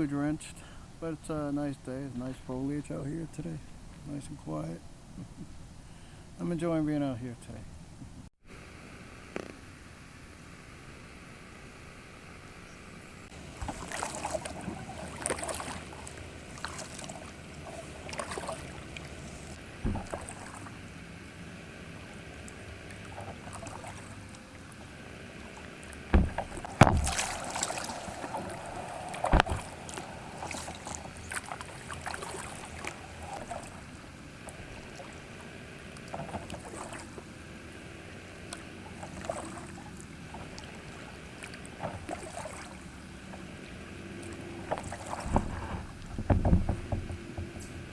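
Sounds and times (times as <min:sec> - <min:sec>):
kayak paddle splashing in water: 0:13.3 - 0:20.8, 0:21.9 - 0:37.3, 0:38.1 - 0:47.3
sharp knocks: 0:19.8 - 0:20.3, 0:26.1 - 0:27.2, 0:46.1 - 0:47.6.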